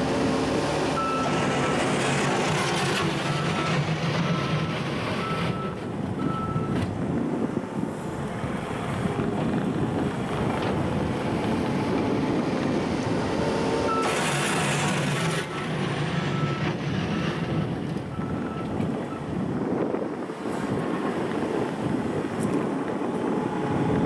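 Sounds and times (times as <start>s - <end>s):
diesel engine running: 0.0s - 19.7s
reversing alarm beeps: 1.0s - 1.8s, 3.2s - 6.8s, 15.5s - 16.7s, 18.1s - 19.3s.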